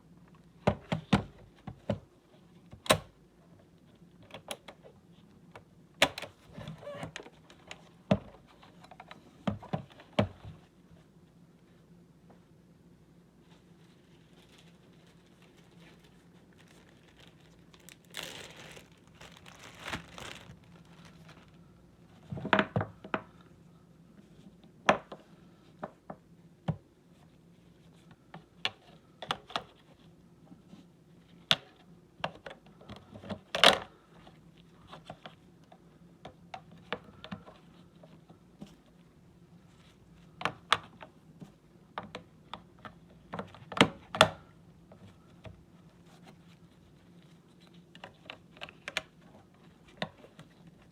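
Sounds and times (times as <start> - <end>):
handling rustle: 13.4 - 22.3.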